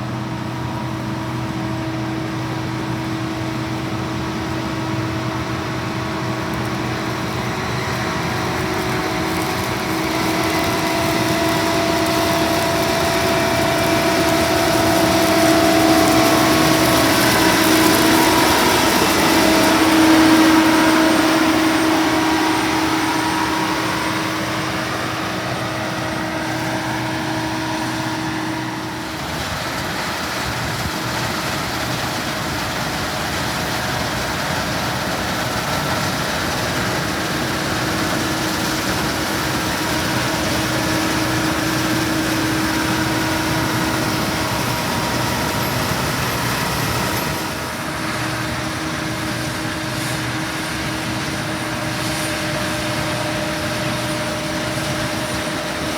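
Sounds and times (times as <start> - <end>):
combine harvester running: 0.0 - 55.9.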